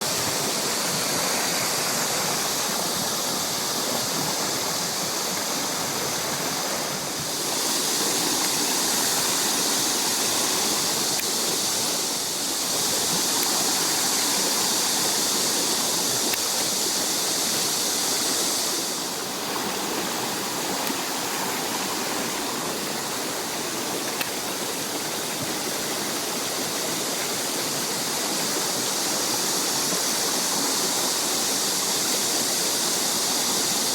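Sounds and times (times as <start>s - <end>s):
stream flowing water: 0.0s - 33.9s.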